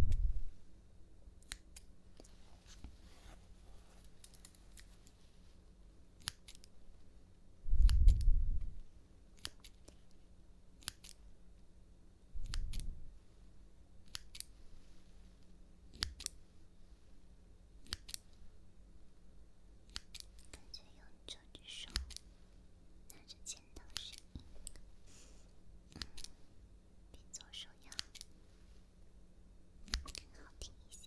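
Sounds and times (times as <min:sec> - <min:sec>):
low muffled rumble: 0:00.0 - 0:00.6, 0:07.7 - 0:08.8
scissors snipping: 0:04.2 - 0:04.9, 0:06.2 - 0:06.7, 0:09.4 - 0:10.1, 0:10.8 - 0:11.2, 0:12.4 - 0:12.9, 0:15.9 - 0:16.4, 0:17.8 - 0:18.3, 0:19.9 - 0:20.6, 0:21.9 - 0:22.2, 0:26.0 - 0:26.3, 0:29.8 - 0:30.3.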